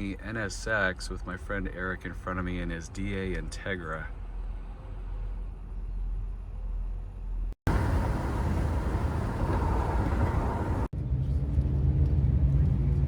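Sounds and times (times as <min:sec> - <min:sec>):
car engine and road rumble: 0:00.1 - 0:13.0
wind noise: 0:07.7 - 0:13.0.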